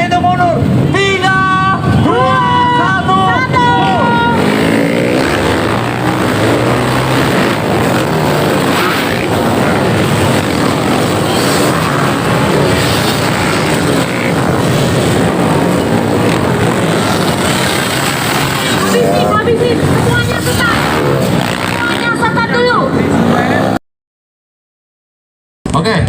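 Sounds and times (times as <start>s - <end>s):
motorcycles revving: 0.0s - 23.8s.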